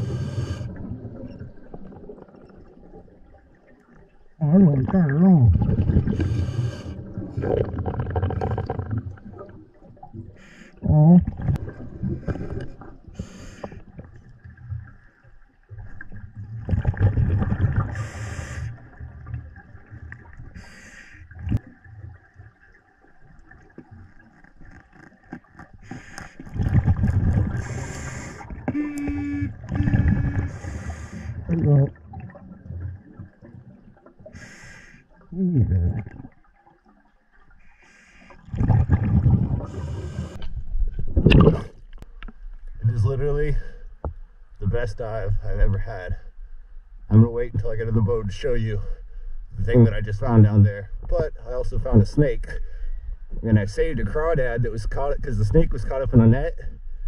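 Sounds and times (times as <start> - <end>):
low murky rumble: 0.0 - 20.6, 21.2 - 34.4, 35.2 - 57.0
underwater gurgling and bubbling: 0.0 - 36.9, 38.4 - 42.0.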